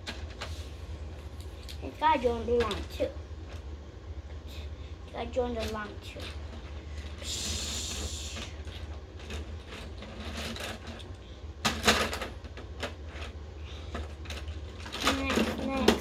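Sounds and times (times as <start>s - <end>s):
toy trains rolling on track: 5.2s - 16.0s.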